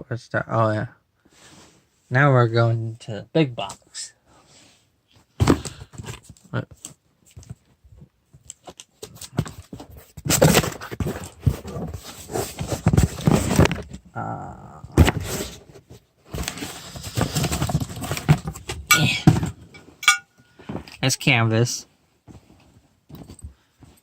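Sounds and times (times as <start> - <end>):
packaging crinkling and rustling: 8.4 - 14.0, 16.3 - 18.8.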